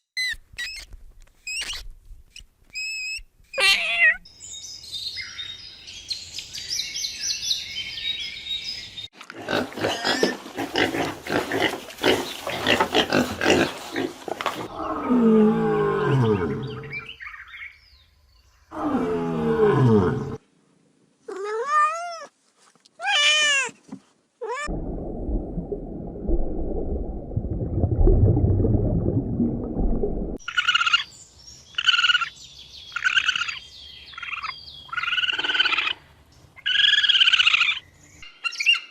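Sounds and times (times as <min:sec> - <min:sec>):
wavering high animal calls: 0:02.8 - 0:04.3, 0:34.2 - 0:36.0, 0:36.6 - 0:37.9
high animal chirping: 0:30.4 - 0:31.1, 0:31.8 - 0:36.0, 0:36.6 - 0:37.9.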